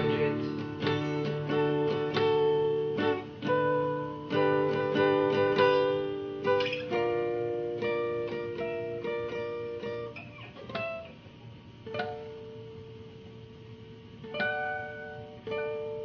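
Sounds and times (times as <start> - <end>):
plucked acoustic string instrument: 0.0 - 11.1.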